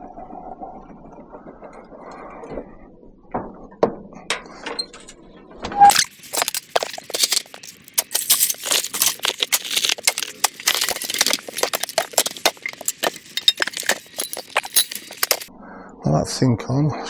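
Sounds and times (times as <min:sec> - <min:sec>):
metal clattering and rattling: 0:05.9 - 0:15.5.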